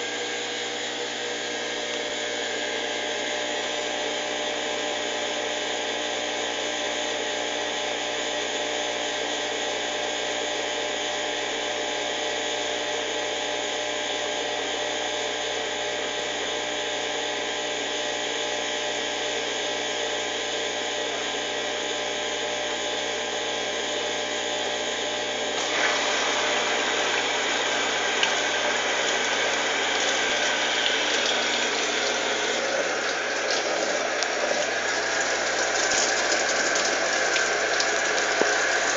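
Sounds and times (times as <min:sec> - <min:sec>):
drain pump running: 0:00.0 - 0:38.9
washing machine spinning: 0:22.5 - 0:38.9.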